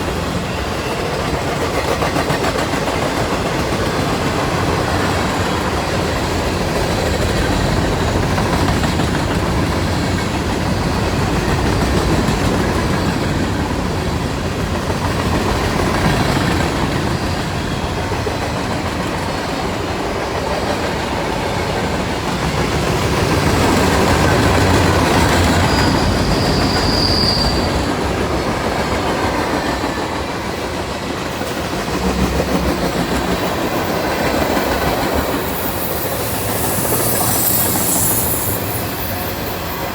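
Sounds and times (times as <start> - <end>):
train wheels rumbling on rails: 0.0 - 39.9
high-pitched wheel squeal: 25.1 - 28.0, 35.3 - 39.9.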